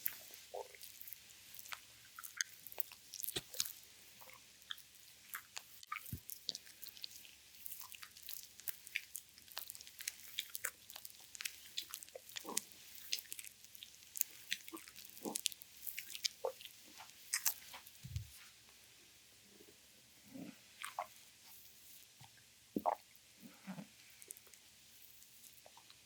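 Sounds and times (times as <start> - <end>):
oiled hands squishing on skin: 0.0 - 18.4
stomach gurgles: 0.0 - 18.4, 19.6 - 21.2, 22.2 - 24.6, 25.5 - 26.0.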